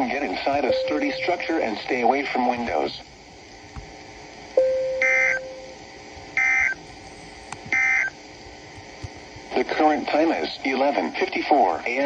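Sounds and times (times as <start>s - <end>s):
low tone: 0.6s - 1.8s, 4.6s - 5.9s
digital data bursts: 0.7s - 1.9s.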